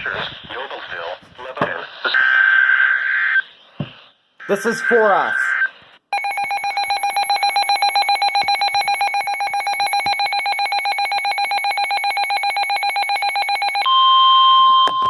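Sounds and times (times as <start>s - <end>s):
steady high alert tone: 4.4s - 13.9s
pulsing electronic alarm tone: 4.4s - 15.0s.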